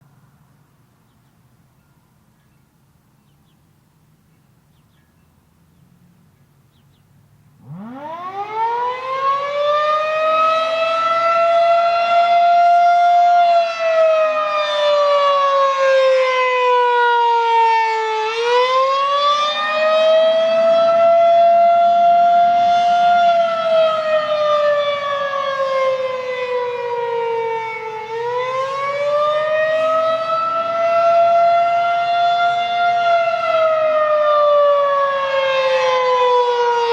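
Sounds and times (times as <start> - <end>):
rotating warning siren wailing: 7.6 - 36.9.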